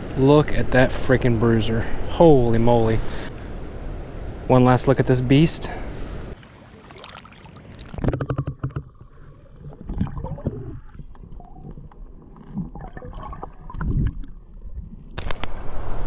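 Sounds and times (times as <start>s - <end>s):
muffled gurgling river water: 0.0s - 16.0s
dull knocks and sloshes: 6.4s - 15.0s.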